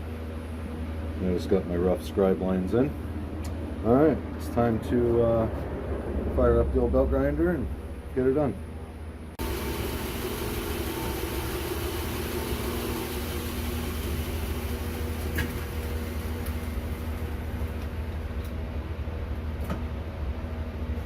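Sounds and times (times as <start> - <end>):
belt grinder humming: 9.4 - 17.4.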